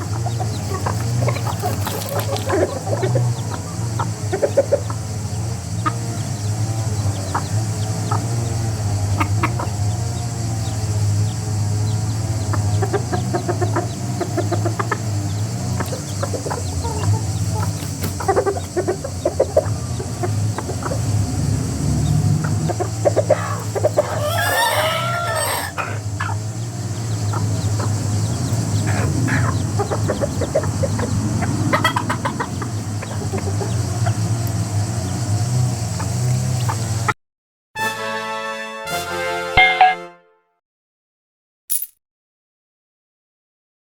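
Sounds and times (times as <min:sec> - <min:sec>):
steady low hum: 0:00.0 - 0:24.2, 0:25.8 - 0:37.1
chickens clucking: 0:00.0 - 0:37.2
rooster crowing: 0:22.2 - 0:26.4.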